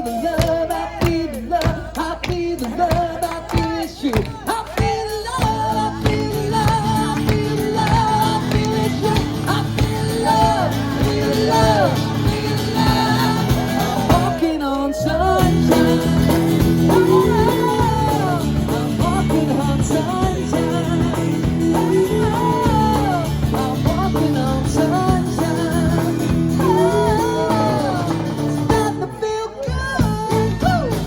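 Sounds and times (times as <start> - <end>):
person singing: 0.0 - 31.0
band playing rock song: 5.4 - 14.6, 15.4 - 29.1.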